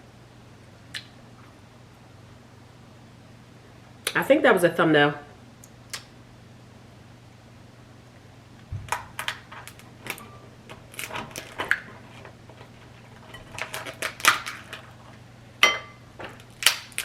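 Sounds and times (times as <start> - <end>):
crab shells cracking: 8.9 - 15.2, 16.2 - 17.0.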